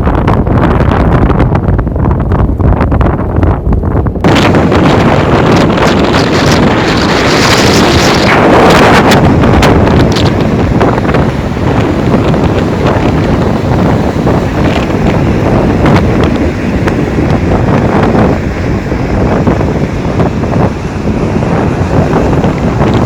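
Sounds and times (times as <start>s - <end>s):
strong wind on microphone: 0.0s - 23.0s
crackles: 4.2s - 13.4s.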